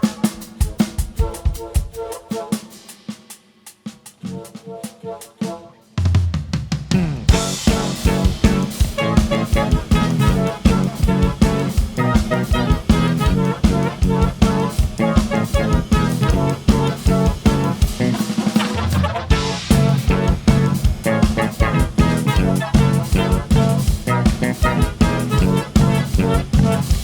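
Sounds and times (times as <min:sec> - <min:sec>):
live band music: 0:00.0 - 0:03.0, 0:06.9 - 0:27.0
fast drum kit groove: 0:00.0 - 0:04.6, 0:05.2 - 0:27.0
bass line: 0:06.9 - 0:27.0.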